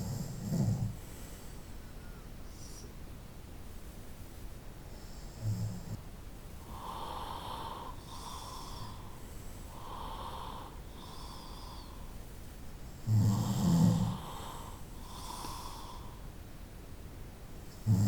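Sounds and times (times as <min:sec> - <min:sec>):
breathy breaths: 0:06.6 - 0:12.3, 0:13.0 - 0:16.4
person snoring: 0:13.1 - 0:16.0, 0:17.8 - 0:18.0.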